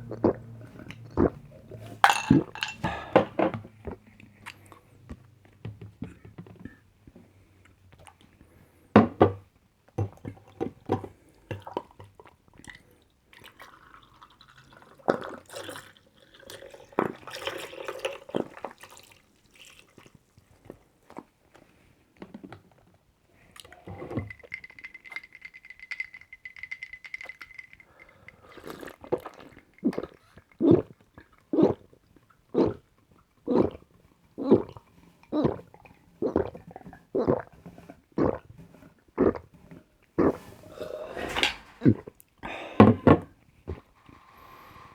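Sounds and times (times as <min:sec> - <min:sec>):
person gulping a drink: 0:00.0 - 0:04.9, 0:13.4 - 0:21.3, 0:22.2 - 0:44.0
handling and liquid sounds: 0:00.1 - 0:04.8, 0:23.5 - 0:30.4.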